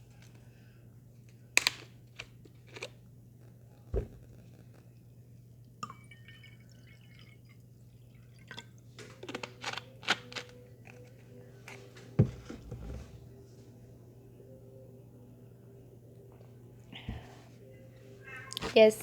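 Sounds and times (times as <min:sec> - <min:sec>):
liquid poured into a glass: 0:05.8 - 0:08.9.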